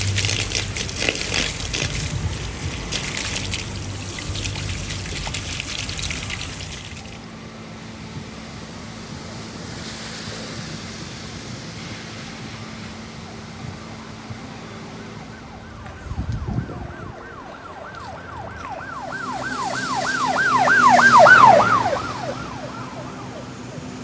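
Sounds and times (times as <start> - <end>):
siren yelping: 15.0 - 24.0.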